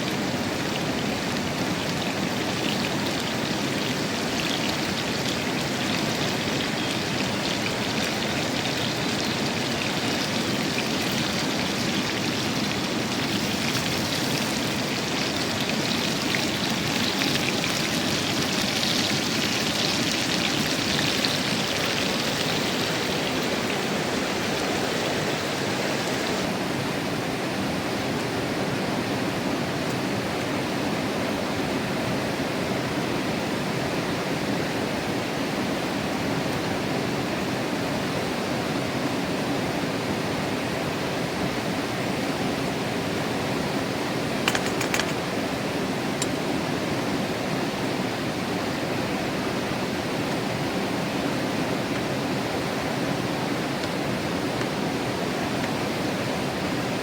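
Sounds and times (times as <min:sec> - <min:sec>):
river flowing: 0:00.0 - 0:57.0.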